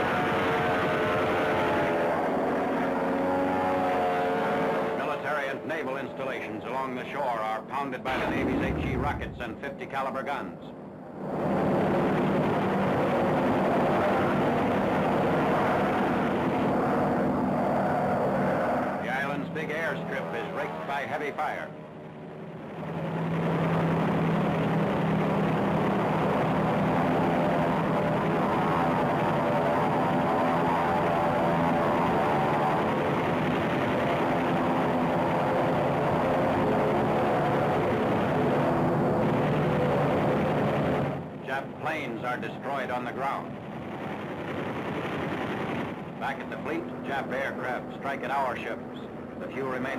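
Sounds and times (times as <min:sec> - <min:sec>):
propeller aircraft engine drone: 0:00.0 - 0:49.9.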